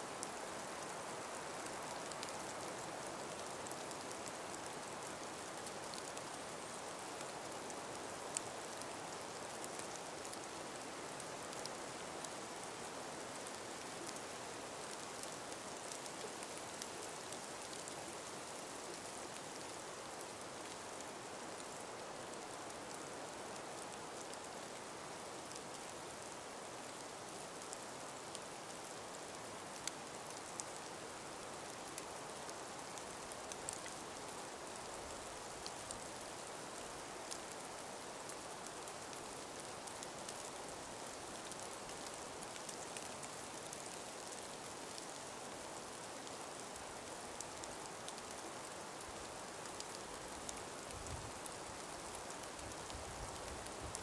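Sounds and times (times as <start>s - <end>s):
breeze through trees hissing: 0.0s - 54.0s
small ticks: 1.2s - 2.6s, 12.8s - 20.0s, 22.6s - 31.2s, 31.9s - 54.0s.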